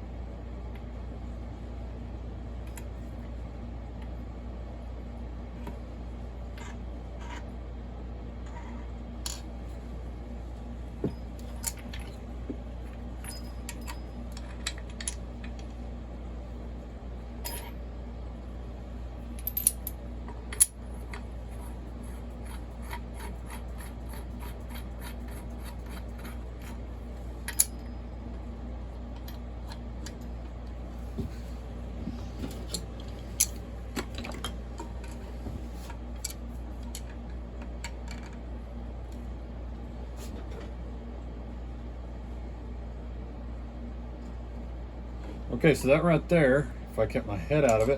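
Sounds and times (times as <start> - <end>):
steady low hum: 0.0 - 47.9
metal tools clicking and clinking: 13.2 - 15.6.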